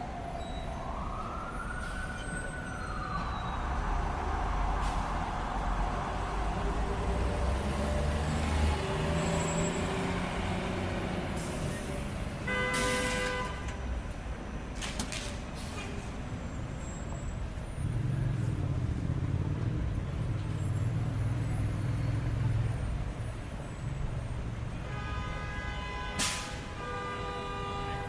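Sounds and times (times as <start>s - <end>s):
car horn toot: 12.4s - 13.8s, 24.8s - 28.0s.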